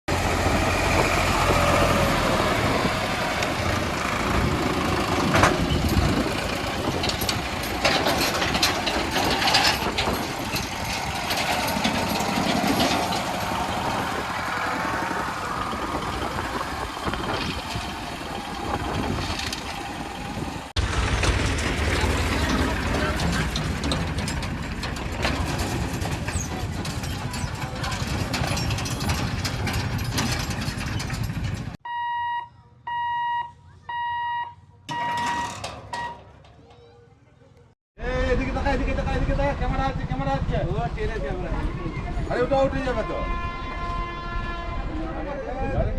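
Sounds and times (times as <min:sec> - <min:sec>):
traffic engines idling and running: 0:00.0 - 0:45.9
low engine rumble: 0:00.1 - 0:31.8.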